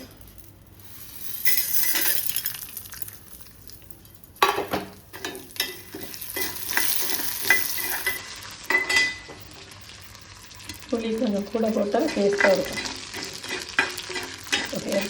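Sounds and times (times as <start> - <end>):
spices sizzling in a pan: 0.0 - 15.0
spatula scraping a pan: 12.0 - 15.0.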